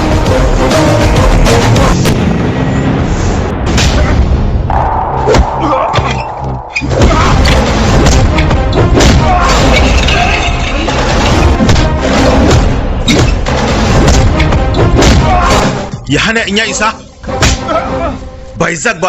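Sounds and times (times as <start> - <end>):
dramatic film score: 0.0 - 19.0
heavy booming hits: 1.8 - 9.8.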